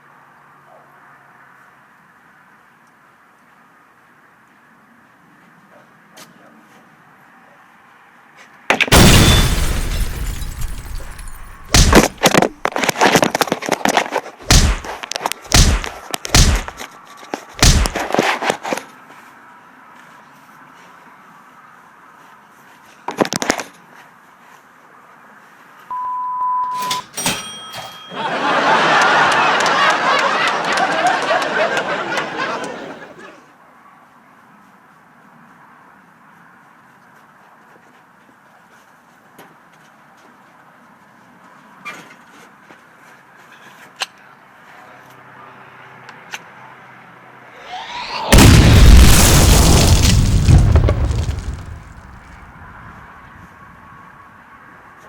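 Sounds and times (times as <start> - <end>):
electronic beep: 25.9 - 27.1
short high ring: 26.7 - 28.3
crowd chatter and laughter: 28.1 - 33.4
loud rumbling blast: 47.9 - 52.4.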